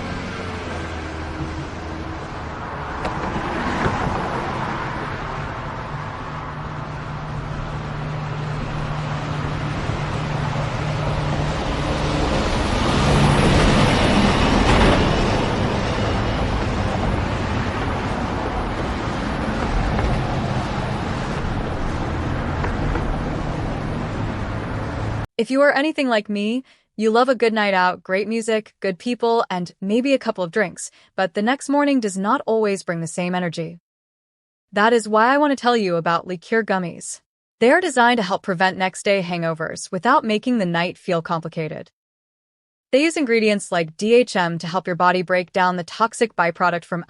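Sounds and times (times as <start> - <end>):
city street traffic: 0.0 - 25.3
vehicle passing close: 0.0 - 25.3.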